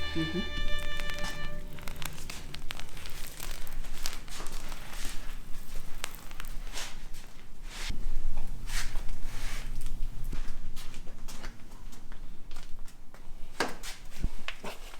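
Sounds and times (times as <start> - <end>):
cloth crinkling and rustling: 0.0 - 12.4.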